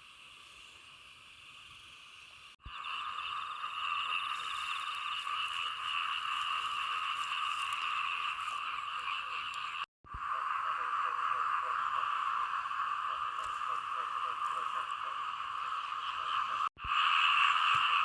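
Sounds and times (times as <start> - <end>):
chorus of frogs calling: 2.7 - 9.9.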